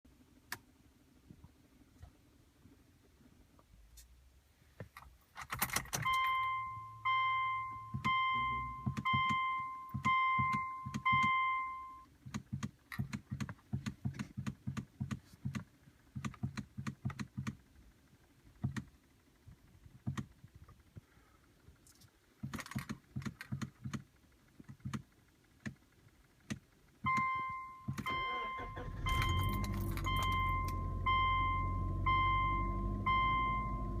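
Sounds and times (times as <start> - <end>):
key turned in ignition: 5.0 - 6.3, 21.9 - 24.0, 27.9 - 30.8
dashboard warning chime: 6.0 - 12.1, 27.1 - 34.0
fast sharp clicks from dashboard: 12.2 - 17.6, 18.6 - 18.9, 22.4 - 27.3.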